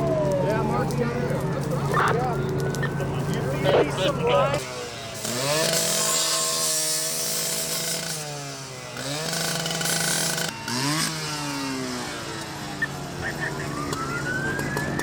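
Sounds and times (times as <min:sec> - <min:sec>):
small engine revving: 0:04.6 - 0:13.2.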